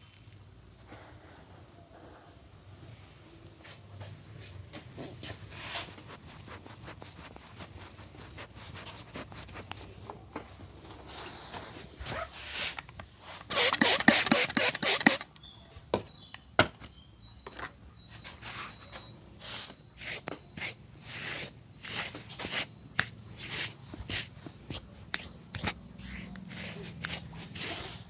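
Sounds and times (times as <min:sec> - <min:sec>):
hands rubbing strokes: 0:05.2 - 0:10.1, 0:12.1 - 0:15.3, 0:19.4 - 0:28.0
hands slapping skin: 0:23.0 - 0:23.2.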